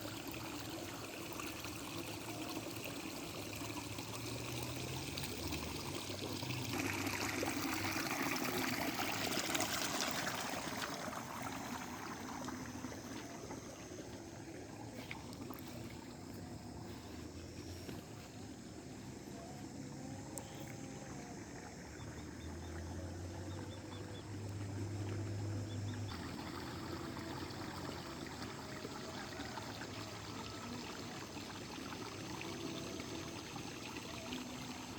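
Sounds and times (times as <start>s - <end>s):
water flowing and trickling: 0.0s - 34.9s
faint low hum: 3.8s - 34.9s.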